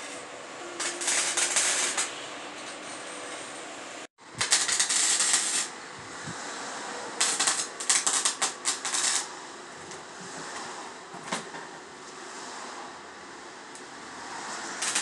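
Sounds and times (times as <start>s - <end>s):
welder crackling: 0.0s - 3.2s, 4.0s - 10.0s, 14.7s - 15.0s.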